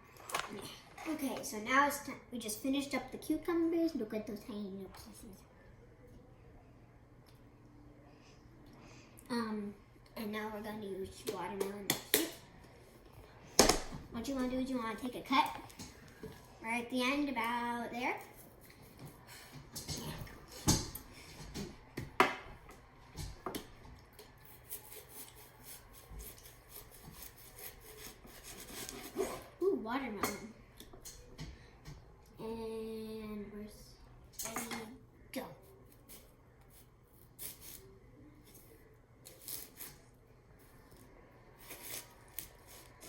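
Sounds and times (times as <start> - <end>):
knife scraping: 24.4 - 29.5.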